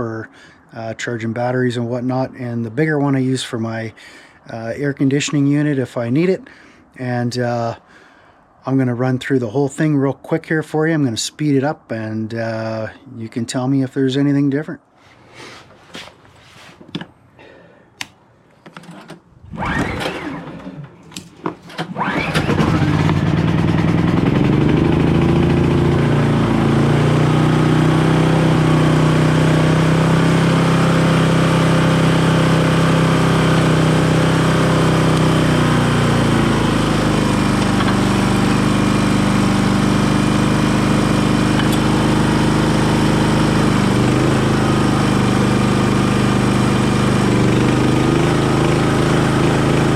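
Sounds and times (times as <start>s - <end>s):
generator engine running: 19.5s - 20.7s, 21.9s - 49.9s.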